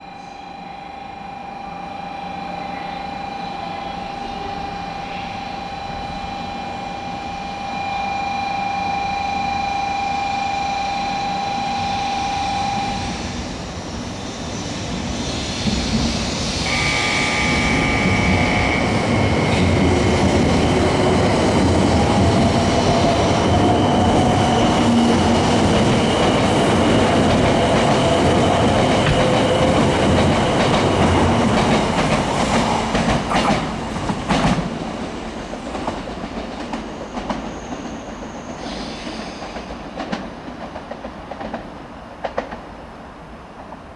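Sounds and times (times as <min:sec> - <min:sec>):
train running noise: 0:00.0 - 0:43.9
steady tone: 0:16.4 - 0:31.4.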